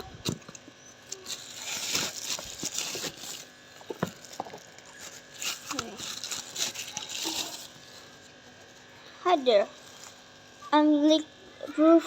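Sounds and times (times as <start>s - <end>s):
packaging rustling and crinkling: 1.1s - 8.2s.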